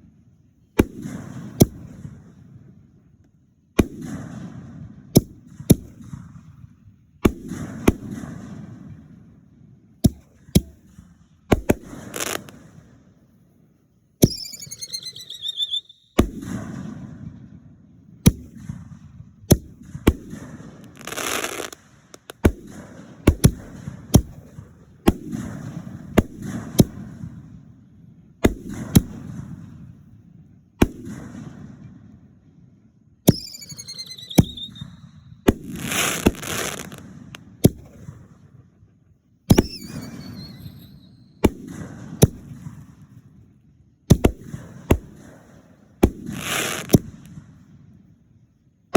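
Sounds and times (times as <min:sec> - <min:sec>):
firework bangs with echoing rumble: 0:00.6 - 0:13.6, 0:14.2 - 0:48.2
crackling firework rush: 0:10.1 - 0:12.9, 0:14.2 - 0:17.2, 0:18.2 - 0:27.4, 0:33.3 - 0:38.4, 0:39.5 - 0:43.2, 0:44.1 - 0:47.7
falling firework whistle: 0:14.2 - 0:16.3, 0:33.3 - 0:37.0, 0:39.5 - 0:41.5.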